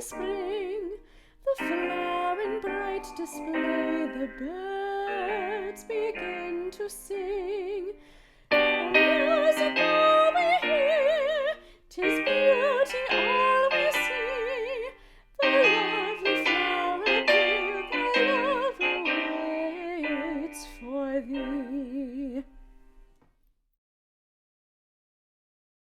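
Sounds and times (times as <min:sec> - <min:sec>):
piano accompaniment: 0:00.0 - 0:23.0
operatic voice singing: 0:08.6 - 0:22.4.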